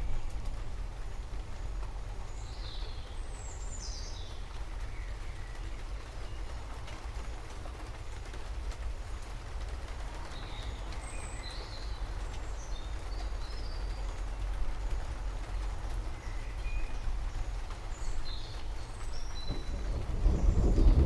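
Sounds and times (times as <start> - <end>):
storm rumble and hiss: 0.0 - 21.0
thunder rumble: 19.1 - 21.0.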